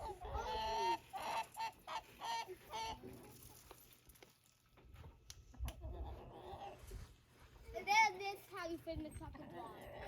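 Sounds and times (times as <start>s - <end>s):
chicken calling: 0.0s - 3.1s.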